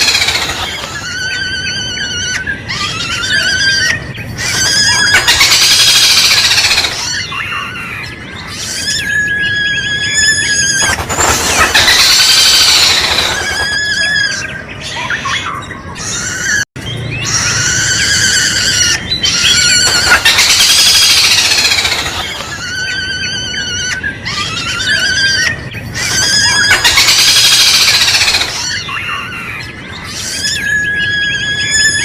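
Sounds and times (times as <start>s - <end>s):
bird trilling calls: 0.0s - 32.0s
harsh bird call phrases: 0.0s - 32.0s.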